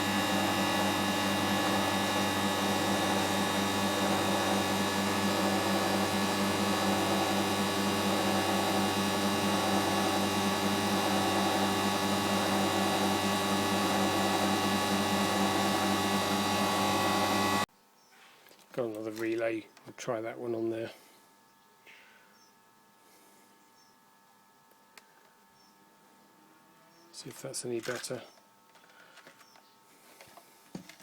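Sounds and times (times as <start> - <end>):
refrigeration compressor humming: 0.0 - 17.7.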